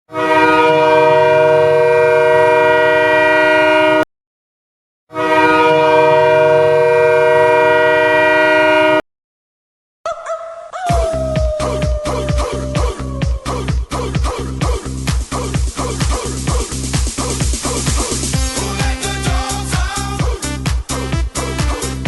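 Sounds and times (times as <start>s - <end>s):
air horn chord blasts: 0.1s - 4.0s, 5.1s - 9.0s, 17.6s - 22.0s
music: 10.9s - 22.0s.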